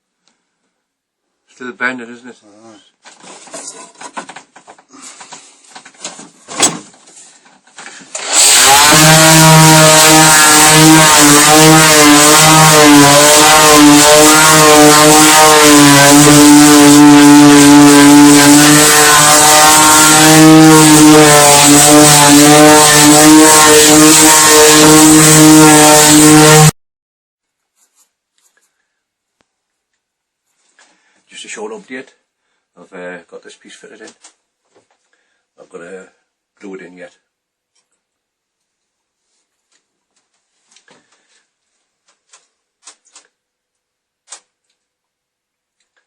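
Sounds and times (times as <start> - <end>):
loud buzzing drone: 8.2 - 26.7.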